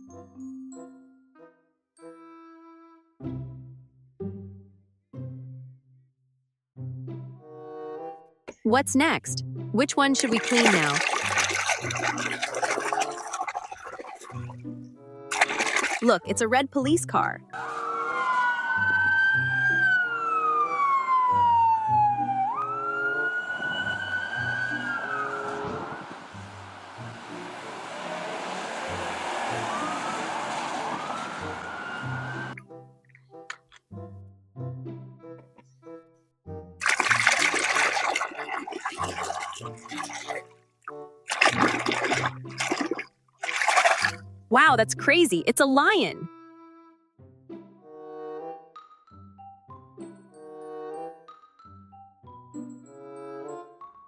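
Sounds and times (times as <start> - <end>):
light background music: 6.8 - 23.4, 44.2 - 54.0
water rushing over toy: 10.0 - 14.6, 15.3 - 16.4, 23.8 - 32.6, 36.8 - 40.5, 41.3 - 44.2
police siren wailing: 17.6 - 26.5, 27.3 - 32.6.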